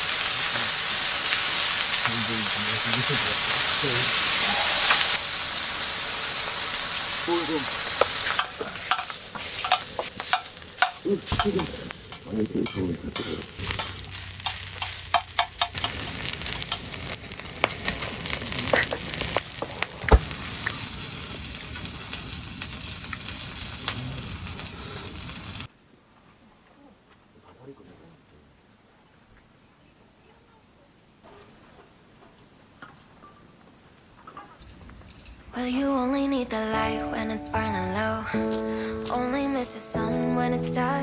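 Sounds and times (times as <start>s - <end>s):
food sizzling in a frying pan: 0.0s - 25.7s.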